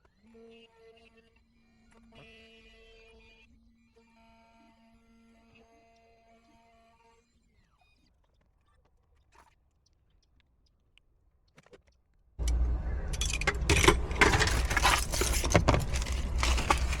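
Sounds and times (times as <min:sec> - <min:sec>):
keys jangling: 0:12.4 - 0:17.0
low rumble: 0:12.4 - 0:17.0.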